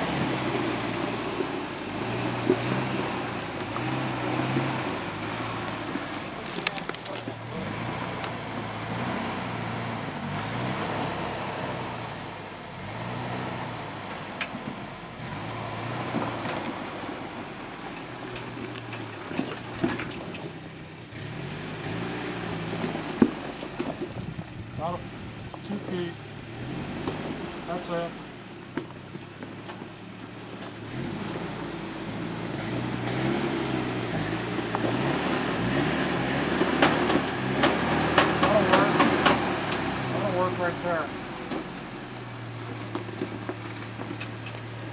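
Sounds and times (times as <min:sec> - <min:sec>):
vehicle engine revving under load: 0:00.0 - 0:44.9.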